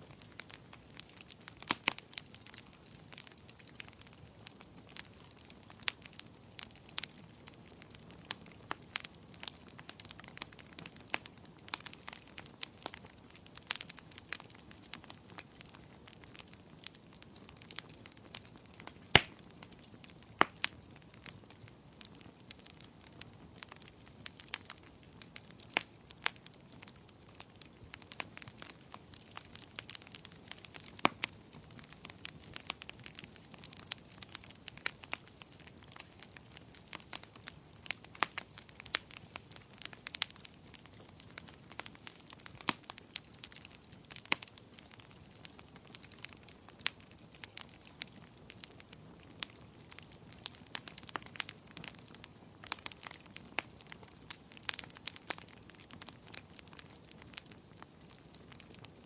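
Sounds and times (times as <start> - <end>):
fire pops and snaps: 0.0 - 59.0
wood fire crackling: 0.0 - 59.0.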